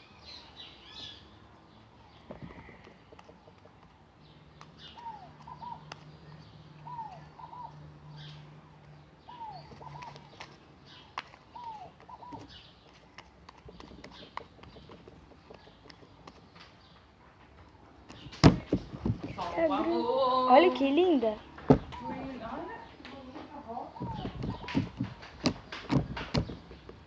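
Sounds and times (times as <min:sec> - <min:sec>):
bird calling: 0:02.0 - 0:17.0, 0:18.1 - 0:27.0
sharp clicks: 0:24.0 - 0:27.0.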